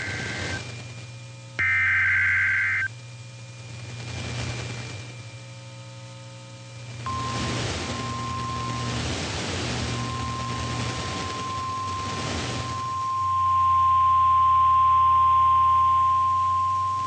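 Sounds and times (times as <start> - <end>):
warbling digital data bursts: 0.0 - 0.6, 1.6 - 2.9
radio static: 0.0 - 0.8, 1.6 - 2.9, 7.1 - 13.1.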